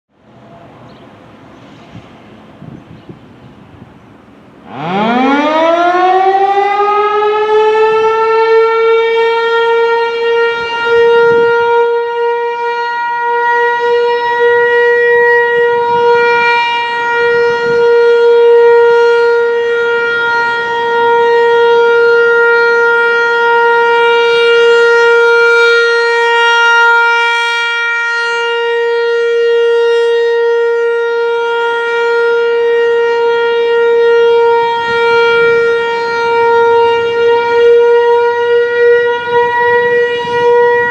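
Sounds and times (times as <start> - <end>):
warning siren steady tone: 0.2 - 40.9.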